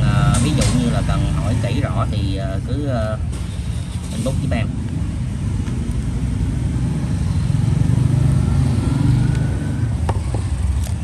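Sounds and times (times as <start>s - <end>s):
road traffic rumble: 0.0s - 11.0s
vehicle passing with rising whine: 4.0s - 11.0s.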